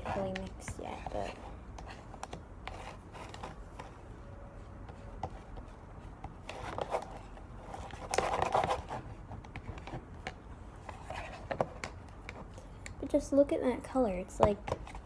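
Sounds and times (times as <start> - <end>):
stirring tool scraping a cup: 0.0 - 4.0, 10.8 - 12.4.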